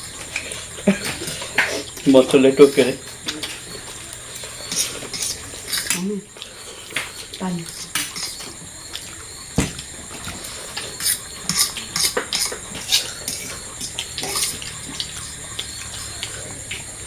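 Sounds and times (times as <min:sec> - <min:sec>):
cutlery clinking on plates: 0:04.6 - 0:06.1, 0:07.0 - 0:09.1, 0:10.3 - 0:16.4.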